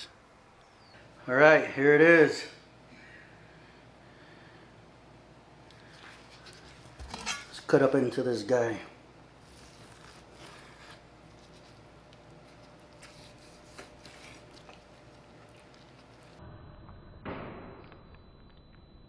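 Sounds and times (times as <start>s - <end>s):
cutlery scraping on plate: 7.0s - 7.5s.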